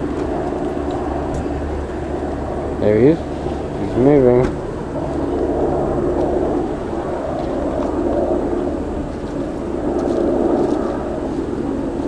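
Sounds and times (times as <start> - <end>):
vehicle engine rumble: 0.0 - 12.0.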